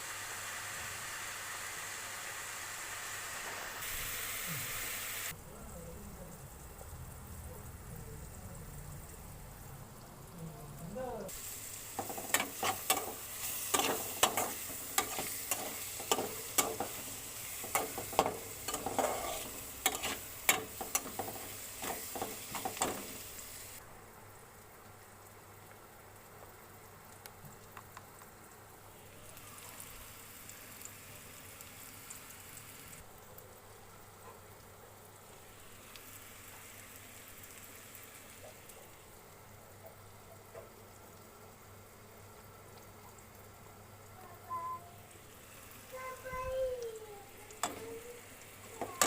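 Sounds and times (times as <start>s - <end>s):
food sizzling in a pan: 0.0s - 23.9s, 28.0s - 33.2s, 35.0s - 49.0s
spatula scraping a pan: 12.0s - 23.2s.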